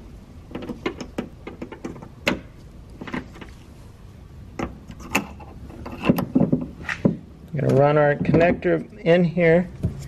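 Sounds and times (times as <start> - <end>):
sharp clicks and light knocks: 0.5 - 3.6.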